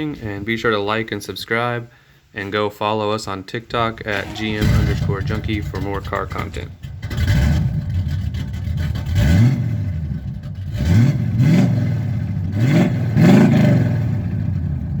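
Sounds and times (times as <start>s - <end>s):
car engine revving: 3.9s - 15.0s.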